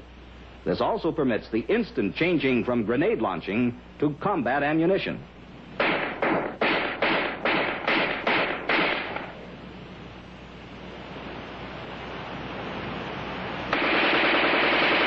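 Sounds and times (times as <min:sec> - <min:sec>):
steady hiss: 0:00.0 - 0:15.0
rifle shots: 0:05.8 - 0:09.4, 0:13.7 - 0:15.0.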